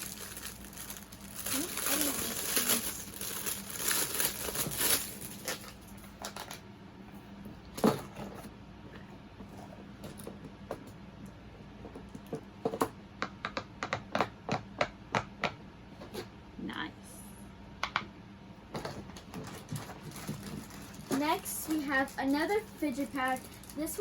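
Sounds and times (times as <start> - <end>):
plastic packaging crinkling: 0.0 - 6.6, 19.1 - 24.0.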